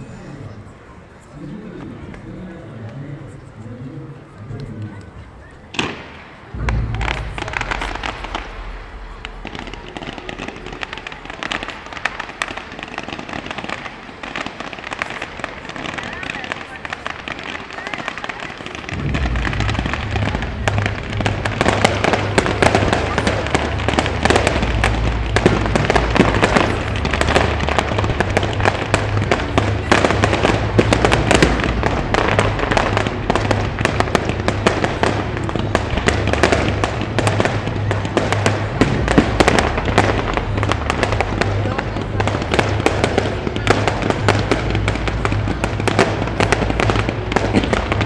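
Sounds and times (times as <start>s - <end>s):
fireworks crackling and popping: 0.0s - 48.0s
steady low rumble: 6.4s - 13.0s, 18.8s - 48.0s.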